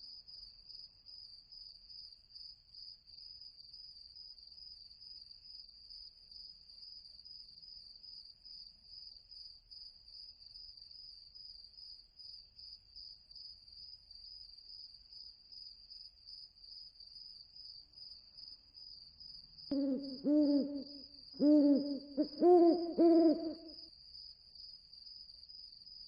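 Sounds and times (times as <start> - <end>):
crickets chirping: 0.0 - 26.0.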